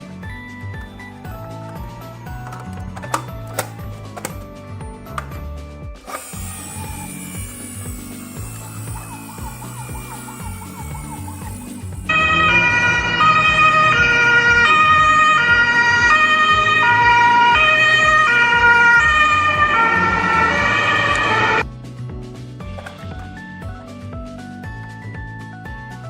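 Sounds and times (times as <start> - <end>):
two-tone ambulance siren: 6.1 - 21.6.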